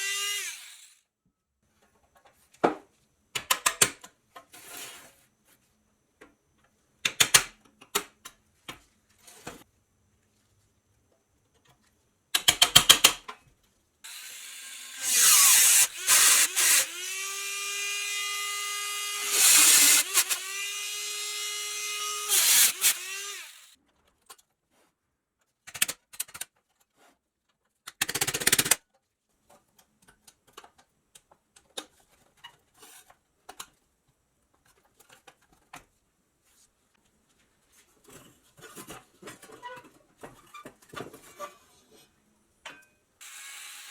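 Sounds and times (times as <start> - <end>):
electric power tool motor: 0.0 - 1.0, 14.1 - 23.8, 43.2 - 43.9.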